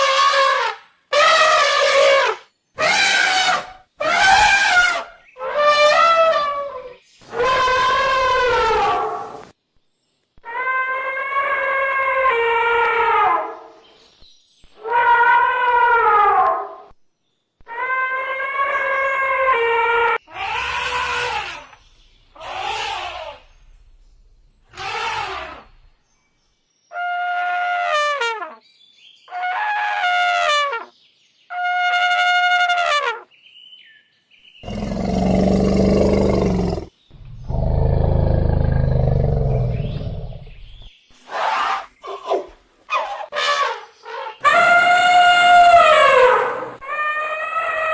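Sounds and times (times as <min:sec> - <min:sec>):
elephant trumpeting: 0:01.2 - 0:09.4, 0:17.7 - 0:21.7, 0:22.4 - 0:23.5, 0:24.7 - 0:25.8, 0:34.6 - 0:40.6, 0:43.0 - 0:47.9.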